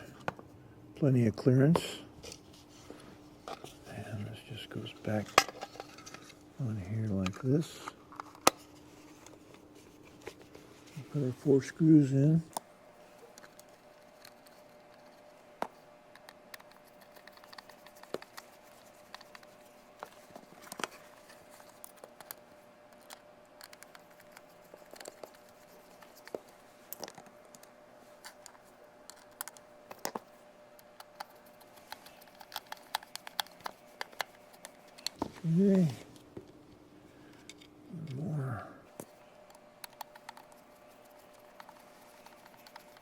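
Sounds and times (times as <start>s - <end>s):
faint steady hum: 0.0s - 43.0s
screwdriver clicks and scratches: 23.0s - 26.4s, 30.8s - 35.2s, 39.5s - 43.0s.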